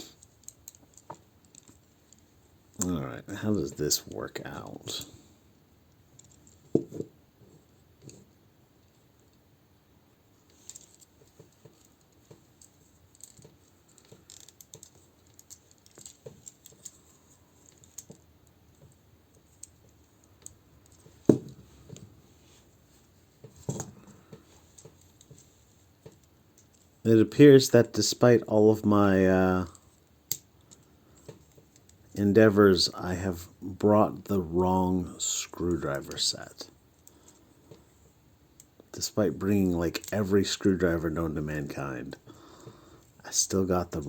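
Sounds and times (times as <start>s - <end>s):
plastic toy parts clicking: 0.2s - 2.9s, 10.5s - 21.4s.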